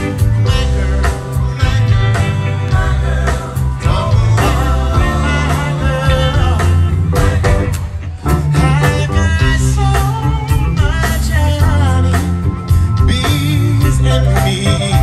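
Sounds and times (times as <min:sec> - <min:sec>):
vocal harmony group singing: 0:00.0 - 0:11.9
live band with bass and guitar: 0:00.0 - 0:15.0.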